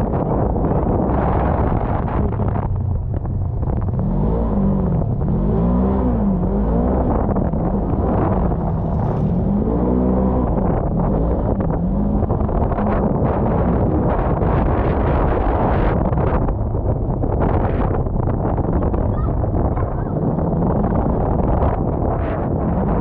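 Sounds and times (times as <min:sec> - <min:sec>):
off-road vehicle engine revving: 0:00.0 - 0:23.0
wind buffeting microphone: 0:00.0 - 0:23.0.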